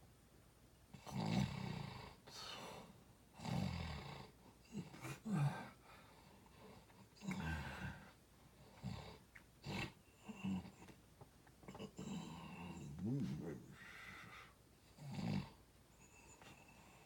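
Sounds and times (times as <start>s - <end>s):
rasping snoring: 11.7s - 17.0s.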